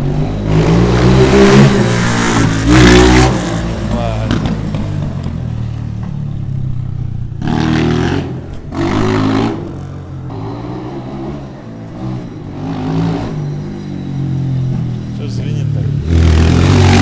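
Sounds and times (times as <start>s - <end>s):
motorbike engine revving: 0.0s - 17.0s.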